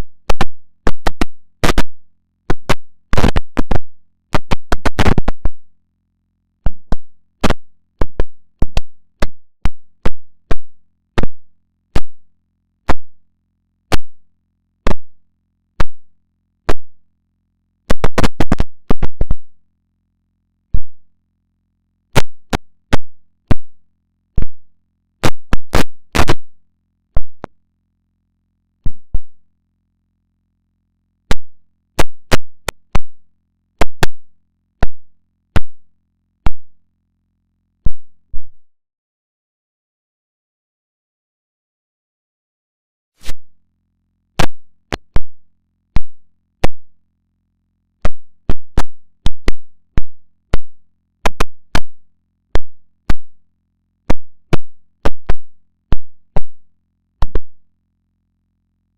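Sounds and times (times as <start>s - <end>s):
digital clicks and pops: 0.0s - 1.9s, 2.5s - 5.6s, 17.9s - 19.4s, 22.2s - 23.7s, 25.2s - 26.4s, 31.3s - 33.2s, 33.8s - 34.2s.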